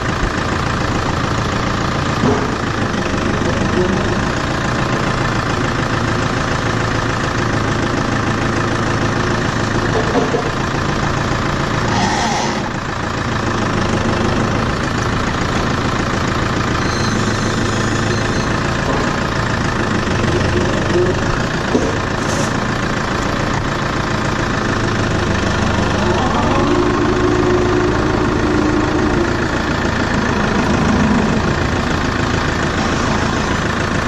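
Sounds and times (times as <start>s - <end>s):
tractor engine running: 0.0s - 34.0s.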